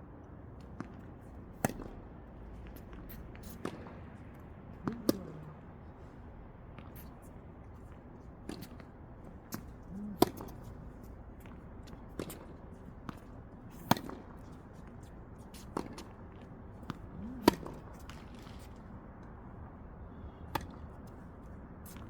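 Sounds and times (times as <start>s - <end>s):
tennis balls struck by rackets: 0.6s - 5.7s, 7.9s - 18.9s, 20.5s - 21.1s
tennis balls bouncing on court: 0.6s - 5.8s, 7.8s - 18.9s, 20.5s - 21.1s.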